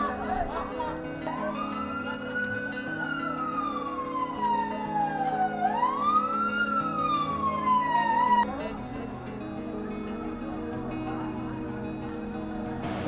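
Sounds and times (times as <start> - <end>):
emergency siren wailing: 1.3 - 8.4.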